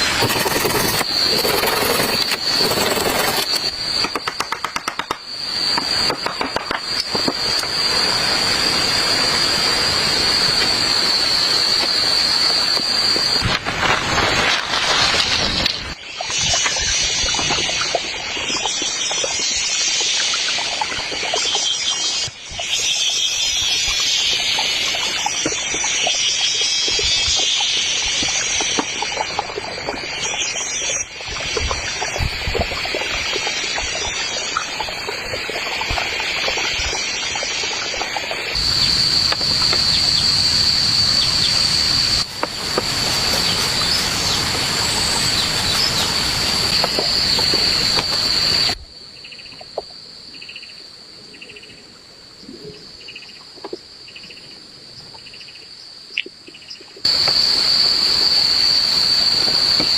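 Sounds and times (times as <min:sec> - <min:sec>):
insects droning: 0:00.0 - 0:59.9
rushing hiss: 0:32.1 - 0:48.8, 0:57.1 - 0:59.9.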